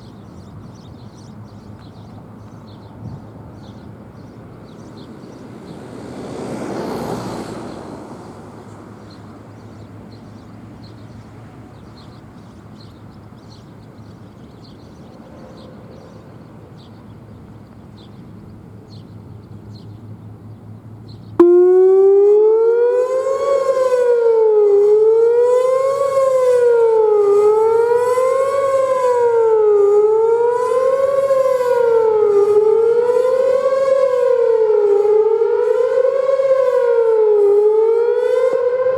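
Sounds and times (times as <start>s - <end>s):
warning siren wailing: 4.7s - 10.0s, 21.4s - 38.9s.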